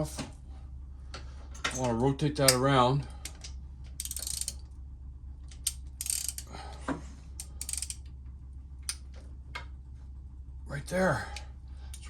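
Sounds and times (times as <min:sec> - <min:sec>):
low steady hum: 0:00.0 - 0:12.0
socket ratchet clicking: 0:04.0 - 0:04.6, 0:05.6 - 0:06.5, 0:07.4 - 0:08.1.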